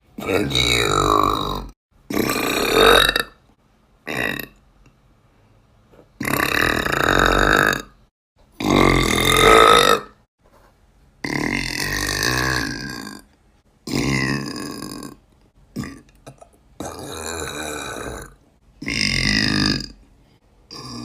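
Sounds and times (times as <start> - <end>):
woman burping loudly: 2.1 - 3.4, 6.2 - 8.0, 8.6 - 10.2, 15.8 - 20.0, 20.7 - 21.0.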